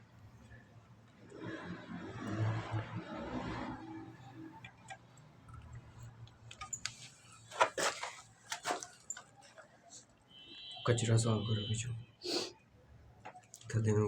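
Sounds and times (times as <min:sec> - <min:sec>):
plumbing fittings and tools clicking: 0:04.6 - 0:07.8.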